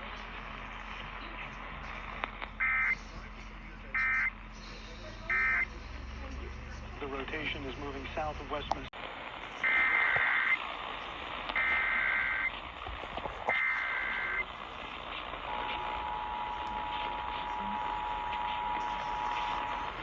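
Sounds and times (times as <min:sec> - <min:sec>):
screechy data tones: 0:04.0 - 0:04.4, 0:05.3 - 0:05.7, 0:09.6 - 0:20.0
steady two-tone attention signal: 0:05.3 - 0:05.7.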